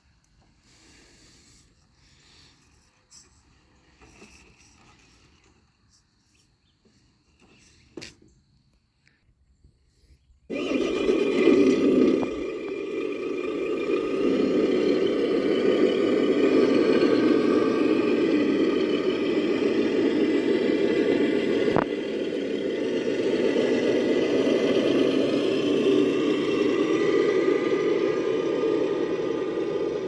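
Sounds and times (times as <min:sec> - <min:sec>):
toy car motor whirring: 0:10.5 - 0:30.0.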